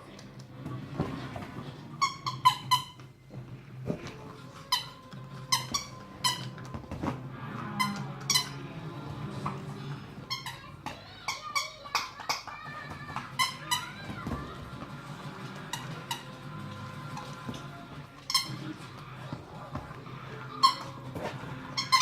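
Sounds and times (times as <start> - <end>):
squeaky toy squeaking: 2.0 - 3.0, 4.7 - 6.6, 7.8 - 8.6, 10.2 - 14.1, 18.2 - 18.6, 20.5 - 21.0, 21.7 - 22.0.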